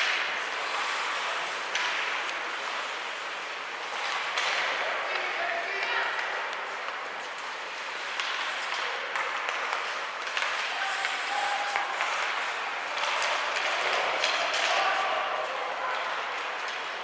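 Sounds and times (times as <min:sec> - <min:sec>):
crowd voices: 0:08.9 - 0:17.0.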